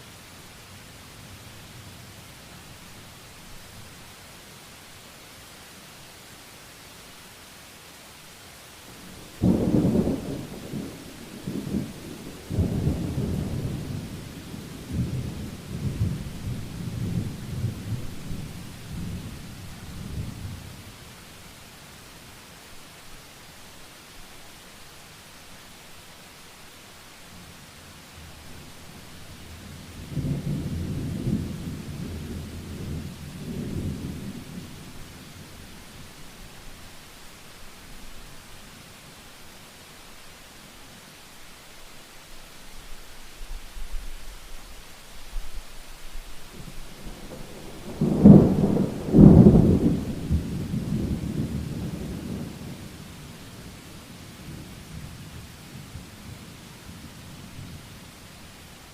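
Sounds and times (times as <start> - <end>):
heavy rain hissing: 0.0 - 58.9
rolling thunder: 46.6 - 52.9
thunderclap: 46.9 - 52.5.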